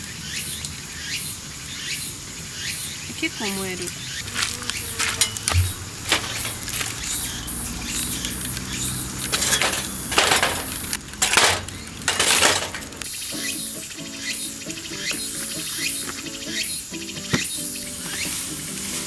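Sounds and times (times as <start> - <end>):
fire hissing: 4.1 - 11.0
wood fire crackling: 4.2 - 13.3.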